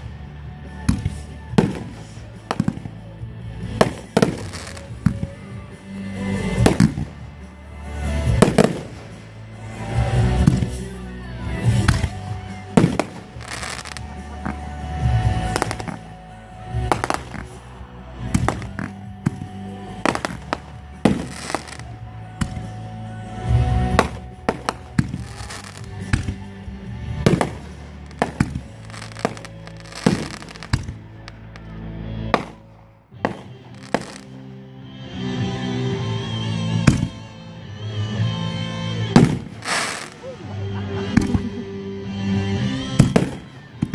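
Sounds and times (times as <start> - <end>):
music playing: 0.0 - 43.9
fireworks bangs: 0.9 - 3.0, 3.7 - 5.3, 6.5 - 7.3, 8.2 - 9.3, 11.7 - 16.1, 16.7 - 22.8, 23.8 - 26.4, 27.2 - 31.6, 32.3 - 34.4, 39.2 - 40.3, 43.0 - 43.9.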